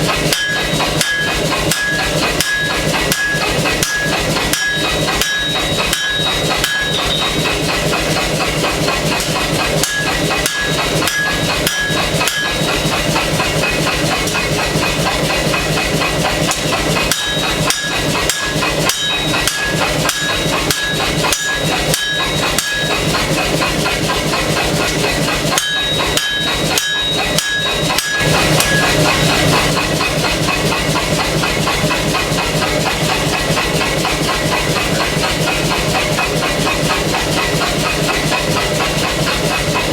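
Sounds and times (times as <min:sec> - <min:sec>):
air hammer pounding steel: 0:00.0 - 0:39.9
high metallic ring: 0:00.3 - 0:08.2, 0:09.8 - 0:13.8, 0:17.0 - 0:24.2, 0:25.1 - 0:30.0.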